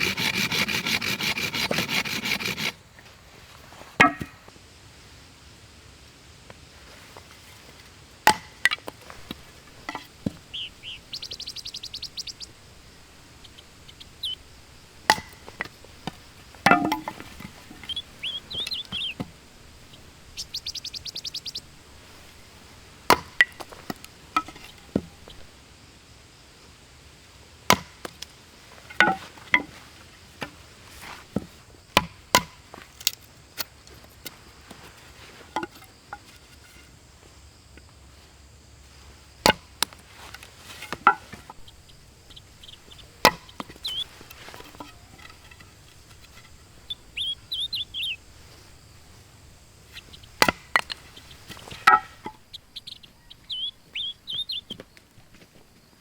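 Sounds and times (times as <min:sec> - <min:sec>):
rapid insect trills: 0:00.0 - 0:56.0
chopping strikes on wood: 0:04.0 - 0:04.4, 0:08.3 - 0:11.4, 0:12.0 - 0:20.3, 0:21.6 - 0:25.5, 0:27.7 - 0:28.3, 0:28.9 - 0:29.8, 0:31.4 - 0:33.2, 0:39.4 - 0:47.1, 0:49.9 - 0:52.4
bird chirps: 0:09.9 - 0:15.6, 0:17.6 - 0:22.1, 0:41.6 - 0:45.5, 0:46.6 - 0:49.2, 0:49.8 - 0:54.9.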